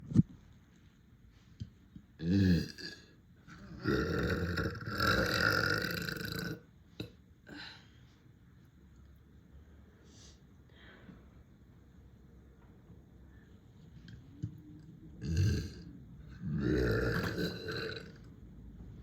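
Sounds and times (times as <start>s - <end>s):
person burping: 2.2s - 7.7s, 15.2s - 18.3s.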